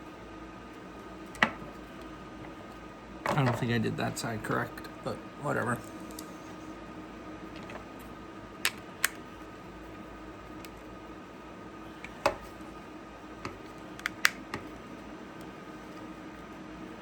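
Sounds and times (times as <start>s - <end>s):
faint steady hum: 0.0s - 17.0s
plastic parts clicking: 8.7s - 9.2s.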